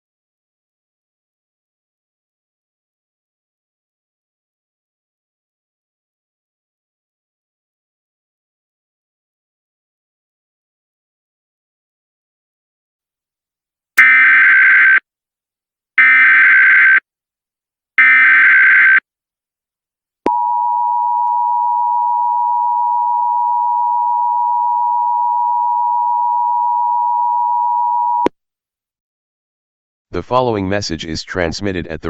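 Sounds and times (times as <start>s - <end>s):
two-tone attention signal: 18.0s - 19.0s, 20.3s - 28.3s.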